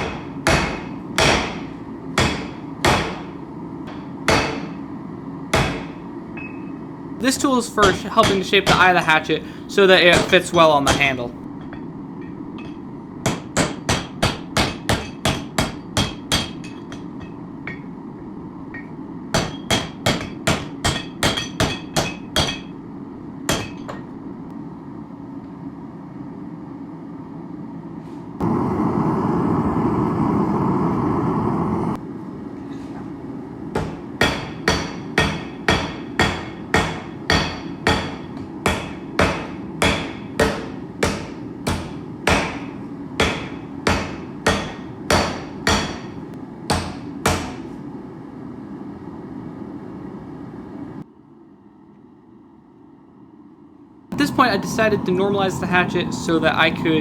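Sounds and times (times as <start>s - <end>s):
hammer ringing on hot steel: 0.0s - 4.9s, 5.5s - 9.4s, 10.0s - 18.0s, 18.7s - 22.8s, 23.5s - 24.1s, 33.8s - 47.6s.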